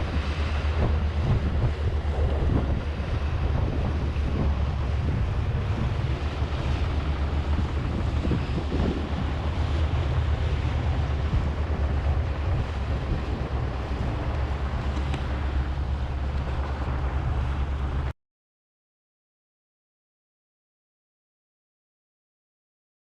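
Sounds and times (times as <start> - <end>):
water noise: 0.0 - 18.1
wind buffeting microphone: 0.0 - 18.1.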